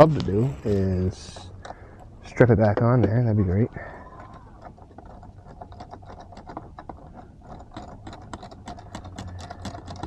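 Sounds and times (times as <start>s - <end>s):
hand ratchet clicking: 4.2s - 10.0s.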